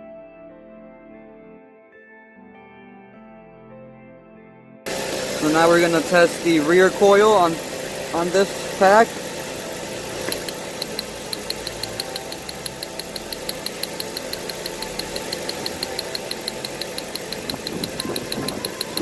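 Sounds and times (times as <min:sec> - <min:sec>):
car engine running: 0:04.9 - 0:19.0
rapid ticking of spark: 0:10.2 - 0:19.0.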